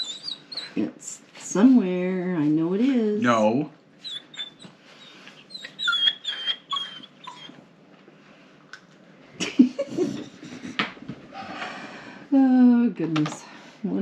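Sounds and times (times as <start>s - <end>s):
dog whimpering: 0.0s - 1.0s, 4.0s - 7.6s.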